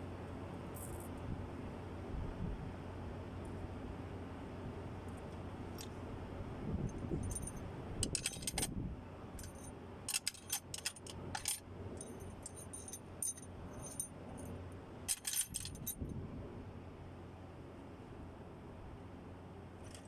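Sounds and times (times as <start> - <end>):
low background hum: 0.0 - 20.0
metal parts clinking: 7.2 - 8.7, 9.4 - 14.1, 15.1 - 15.9.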